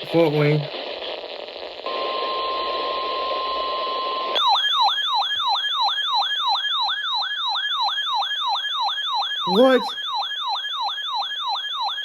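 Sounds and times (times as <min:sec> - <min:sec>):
radio static: 0:00.0 - 0:02.9
electronic yelp siren: 0:01.9 - 0:12.0
steady alert tone: 0:09.5 - 0:10.0.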